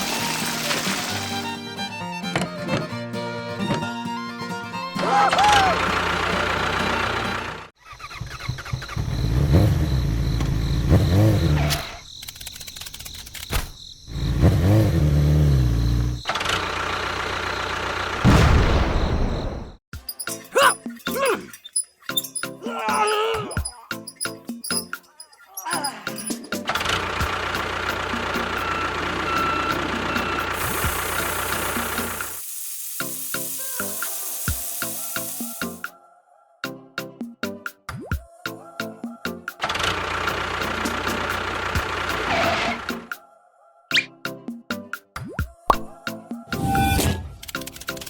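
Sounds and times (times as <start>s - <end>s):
small motor rattling and humming: 0.0s - 1.9s, 26.7s - 35.4s
lower steady engine sound: 5.4s - 11.4s, 14.2s - 18.3s, 26.8s - 32.4s, 39.6s - 42.3s
engine revving: 5.4s - 11.9s, 14.1s - 18.3s.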